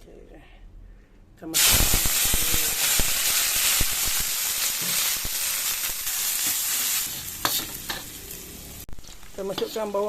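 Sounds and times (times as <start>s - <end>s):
crackling pops: 1.6s - 6.6s
oil sizzling in a pan: 1.6s - 10.0s.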